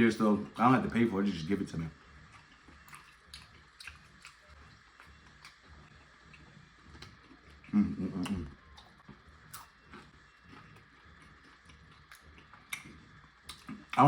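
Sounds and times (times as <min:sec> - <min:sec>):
chewing food: 0:00.9 - 0:14.0.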